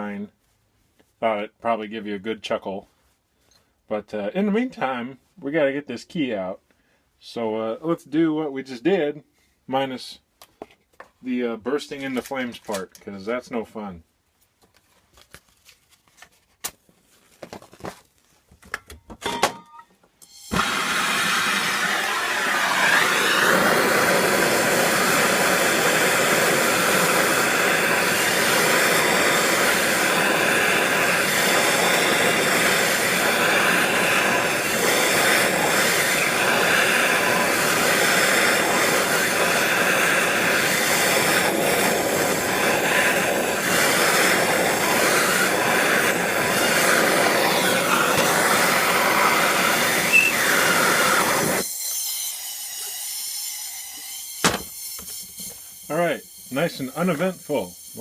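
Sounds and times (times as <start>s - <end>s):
gas torch hissing: 20.3s - 58.0s.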